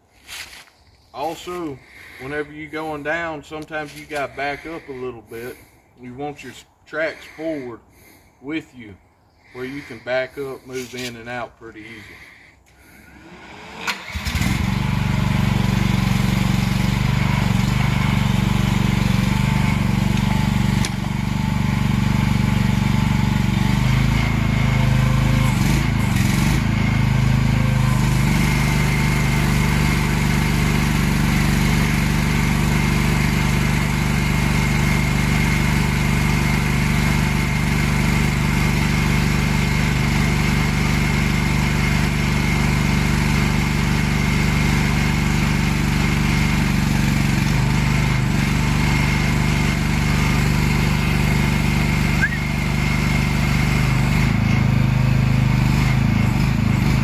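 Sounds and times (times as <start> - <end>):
excavator engine running under load: 11.7 - 57.0.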